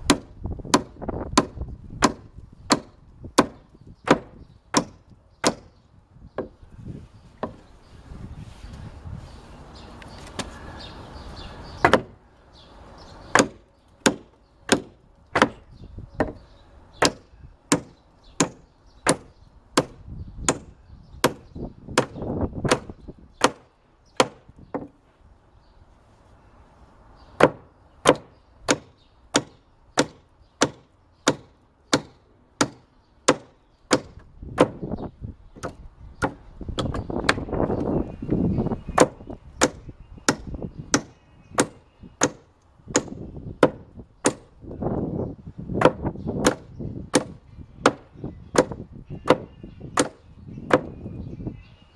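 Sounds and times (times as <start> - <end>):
hammer striking wood: 0.0 - 5.8, 7.4 - 7.6, 11.8 - 12.2, 13.3 - 16.4, 17.0 - 24.9, 27.4 - 34.8, 35.6 - 37.5, 39.0 - 44.5, 45.8 - 51.0.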